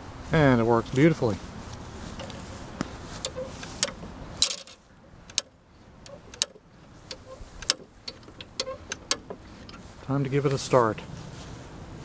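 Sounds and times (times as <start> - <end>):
metal parts clicking and clinking: 2.2 - 2.5, 3.2 - 9.8.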